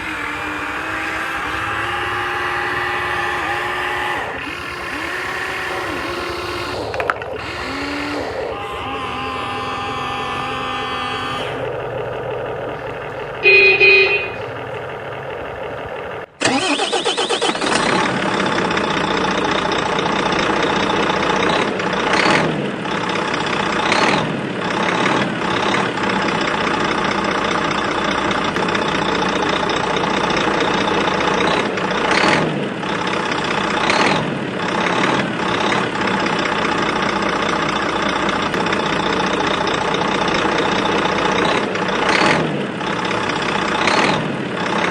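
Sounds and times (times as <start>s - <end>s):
dense mechanical whine: 0.0s - 44.9s
short beep: 13.4s - 14.5s.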